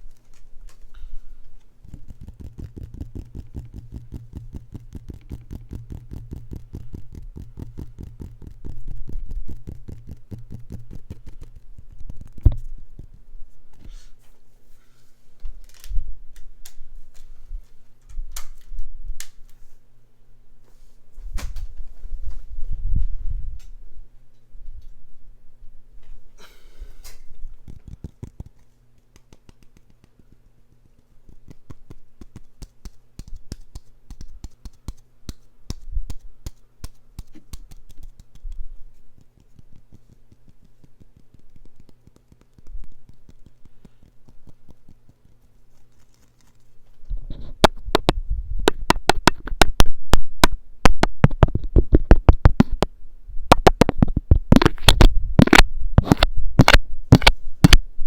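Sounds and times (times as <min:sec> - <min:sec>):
quick sharp clicks and taps: 0:01.8 - 0:13.9, 0:27.1 - 0:45.5, 0:47.3 - 0:52.9, 0:53.5 - 0:57.8.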